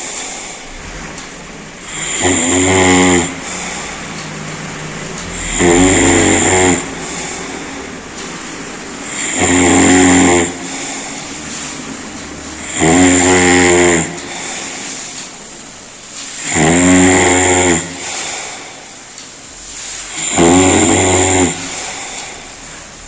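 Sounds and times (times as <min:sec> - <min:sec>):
person snoring loudly: 0:00.0 - 0:00.6, 0:01.8 - 0:04.1, 0:05.3 - 0:08.0, 0:08.9 - 0:11.8, 0:12.5 - 0:15.1, 0:16.4 - 0:18.9, 0:20.1 - 0:22.6
soft breathing: 0:03.3 - 0:04.2, 0:05.3 - 0:09.3, 0:10.5 - 0:12.8, 0:14.0 - 0:15.5, 0:17.9 - 0:19.0, 0:21.5 - 0:22.9.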